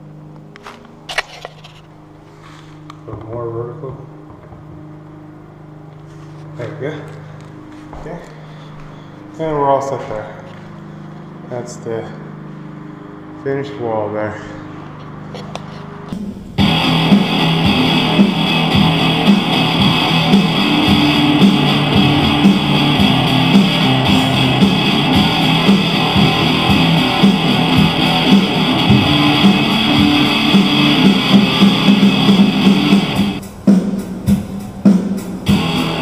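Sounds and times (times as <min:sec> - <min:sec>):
rhythmic guitar music: 0:16.2 - 0:36.0.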